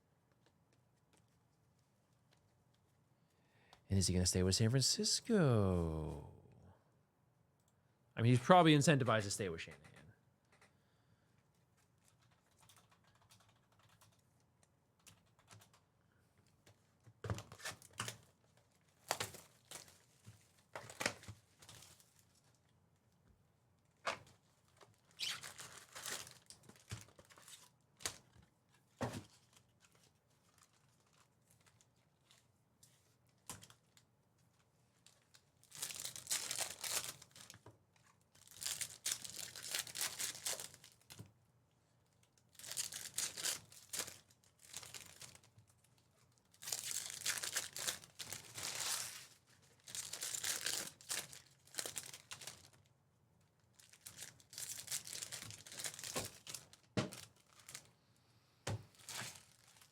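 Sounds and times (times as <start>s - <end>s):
wrappers tearing and crinkling: 25.1s - 28.2s, 35.1s - 37.6s, 38.4s - 41.2s, 42.5s - 45.5s, 46.5s - 52.8s, 53.8s - 57.9s, 59.0s - 59.9s.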